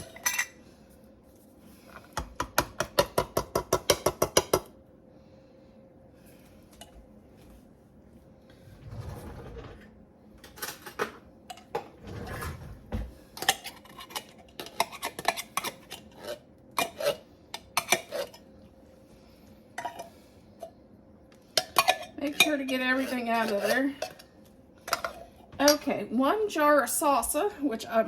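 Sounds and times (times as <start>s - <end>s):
spoon scraping a tin can: 13.4s - 18.5s, 21.6s - 24.3s.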